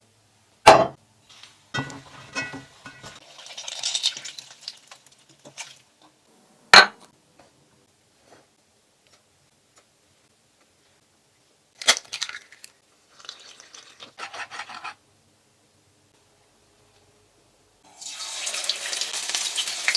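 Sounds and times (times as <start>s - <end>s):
dishes knocking down: 0.7s - 1.0s, 1.8s - 3.2s, 6.8s - 7.1s
rustling: 1.2s - 5.9s.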